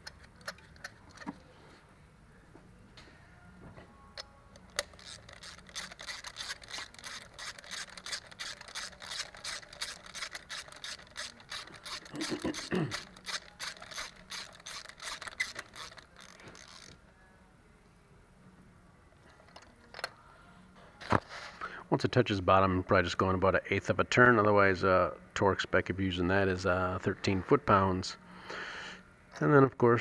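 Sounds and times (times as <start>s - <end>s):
socket ratchet clicking: 0.0s - 1.4s, 4.2s - 17.0s.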